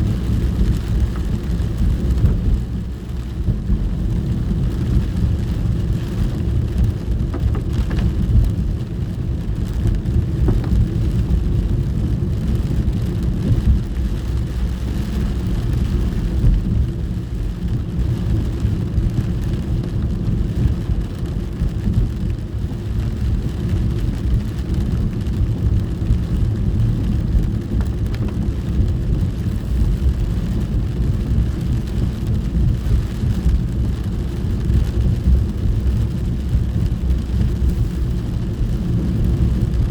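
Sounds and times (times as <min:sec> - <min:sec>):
car rumbling on road: 0:00.0 - 0:39.9
rain hissing on car roof: 0:00.0 - 0:39.9.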